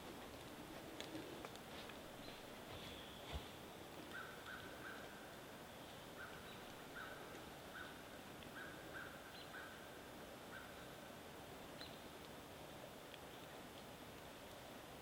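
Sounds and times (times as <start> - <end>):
faint bird calling: 2.2 - 10.9.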